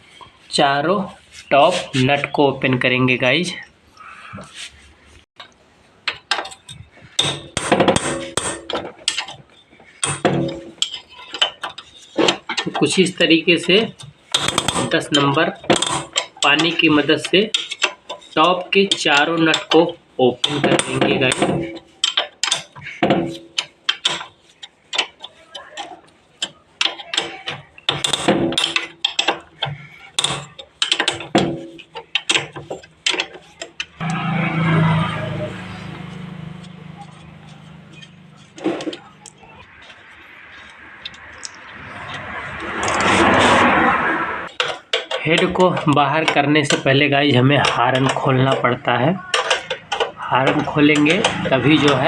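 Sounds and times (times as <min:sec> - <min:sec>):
metal spanner clinking on nuts: 0:06.1 - 0:34.0, 0:44.5 - 0:52.0.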